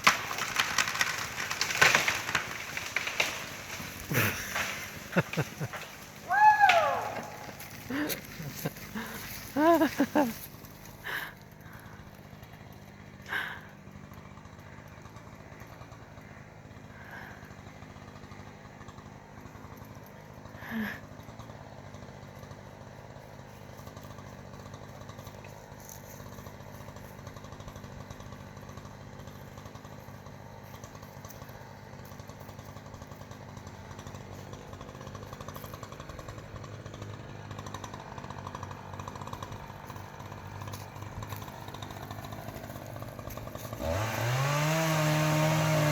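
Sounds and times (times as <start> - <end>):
chainsaw engine revving: 0.0 - 45.9.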